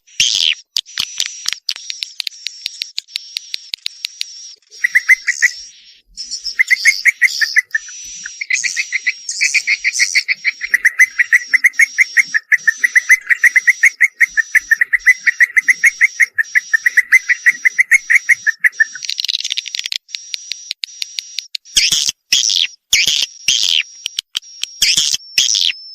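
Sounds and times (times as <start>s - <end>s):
birds chattering chirps: 0.0s - 20.0s
high steady twittering: 0.0s - 20.8s.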